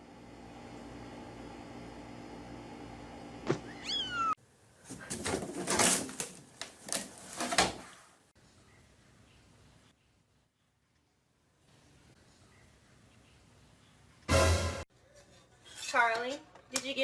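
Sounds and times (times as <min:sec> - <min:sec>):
cat meowing: 0:03.7 - 0:04.4.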